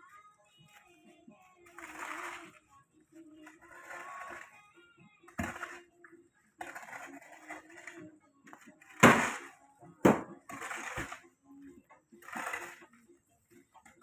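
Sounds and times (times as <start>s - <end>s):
scraping or rustling: 1.6s - 4.6s, 5.3s - 5.9s, 6.6s - 9.6s, 10.4s - 11.3s, 12.2s - 13.0s.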